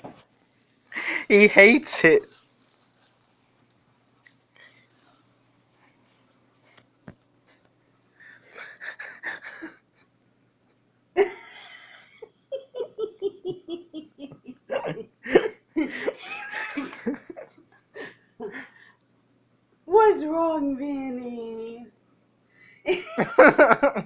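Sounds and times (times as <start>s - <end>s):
person laughing hard: 11.2s - 17.5s.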